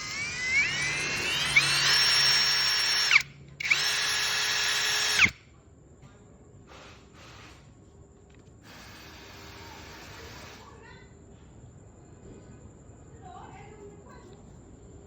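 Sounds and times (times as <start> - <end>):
drill whining and spinning down: 0.0 - 5.4.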